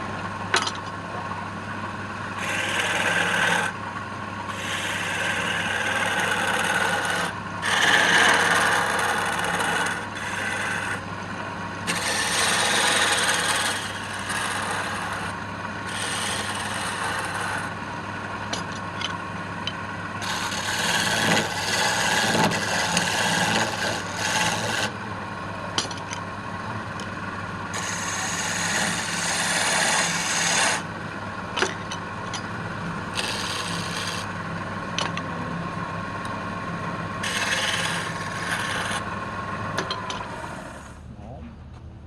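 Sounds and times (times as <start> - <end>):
wood lathe motor hum: 1.6 - 41.0
tool rasping on spinning wood: 2.3 - 3.8, 4.4 - 11.1, 11.8 - 17.8, 20.2 - 25.0, 27.7 - 30.9, 33.1 - 34.4, 37.2 - 39.2, 39.8 - 41.0.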